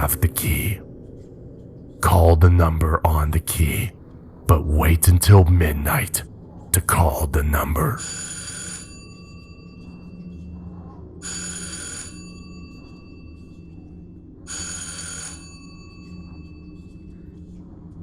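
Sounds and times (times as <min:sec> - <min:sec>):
low drone: 0:00.0 - 0:08.2
telephone ringing: 0:07.3 - 0:09.8, 0:11.2 - 0:13.1, 0:14.5 - 0:16.6.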